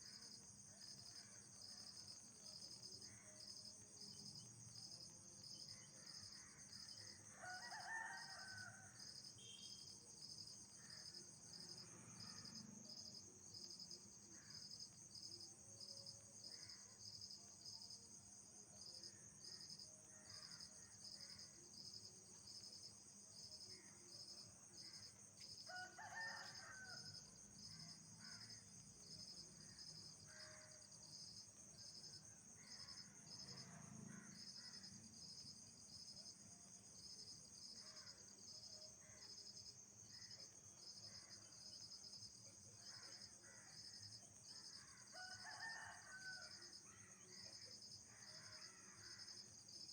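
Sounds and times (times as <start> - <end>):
lower insect calls: 0.0 - 18.0.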